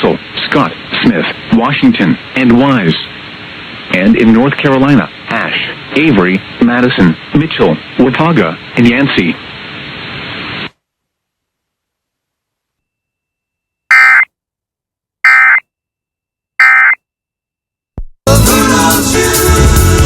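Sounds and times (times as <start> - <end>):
buzzy digital data tones: 13.9 - 14.3, 15.3 - 15.6, 16.6 - 17.0
music: 18.3 - 20.0.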